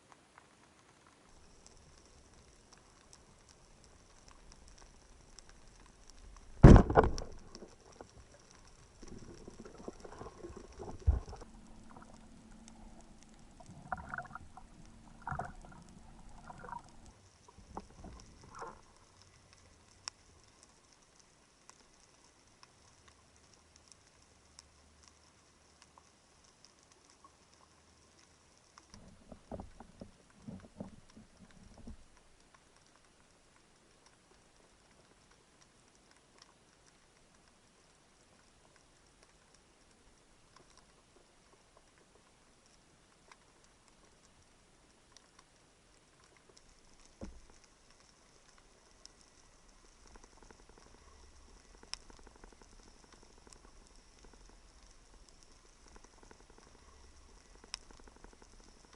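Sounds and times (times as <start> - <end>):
underwater clicks and rattles: 0.1 - 58.9
underwater knocks: 6.6 - 7.6.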